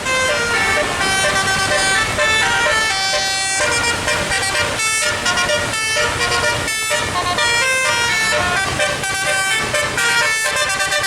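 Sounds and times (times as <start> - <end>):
musical air horn melody: 0.0 - 11.0
vehicle rumble: 0.0 - 11.0.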